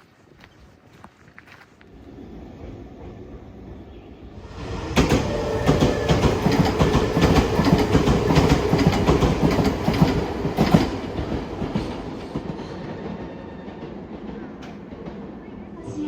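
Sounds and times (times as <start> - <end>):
train wheels clacking on rails: 4.7 - 15.8.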